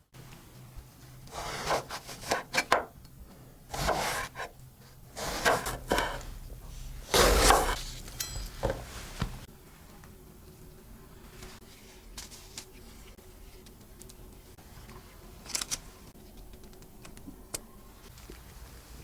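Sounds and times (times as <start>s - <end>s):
scraping on wooden cutting board: 1.3s - 2.8s, 3.7s - 4.5s, 5.1s - 9.4s.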